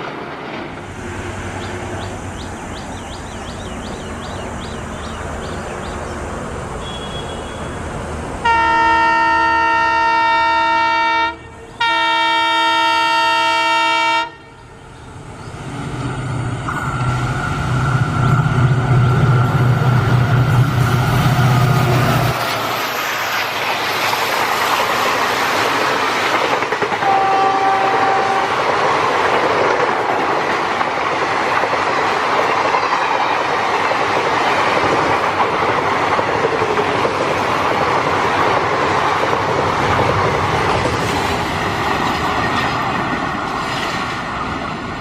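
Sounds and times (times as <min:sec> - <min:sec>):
train rumbling: 0:00.0 - 0:45.0
locomotive horn blasts: 0:06.8 - 0:07.8, 0:08.4 - 0:14.6, 0:27.0 - 0:28.7.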